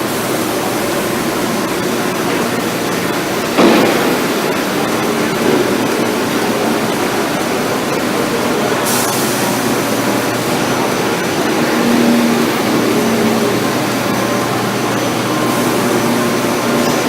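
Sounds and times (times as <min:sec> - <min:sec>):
farm machinery running: 0:00.0 - 0:17.0.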